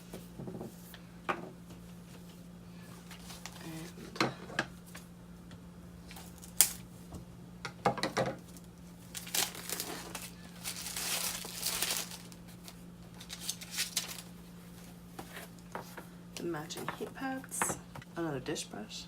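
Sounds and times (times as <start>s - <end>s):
plastic packaging crinkling: 3.0s - 3.9s, 8.5s - 14.4s.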